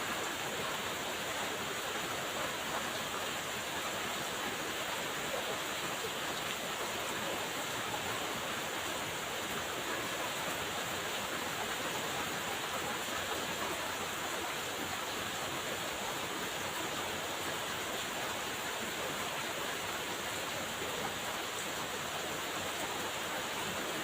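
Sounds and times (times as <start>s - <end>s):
steady rain falling: 0.0s - 24.0s.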